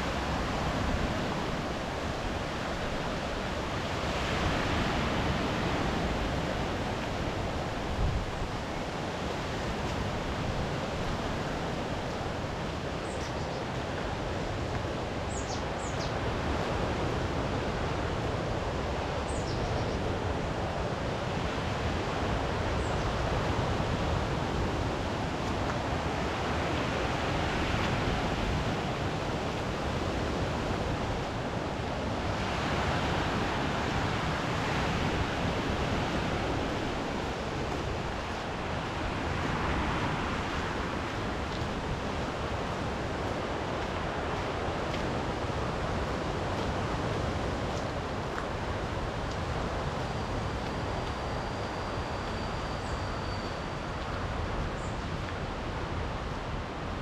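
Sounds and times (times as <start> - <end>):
wind: 0.0 - 57.0
sea waves breaking: 24.4 - 50.6.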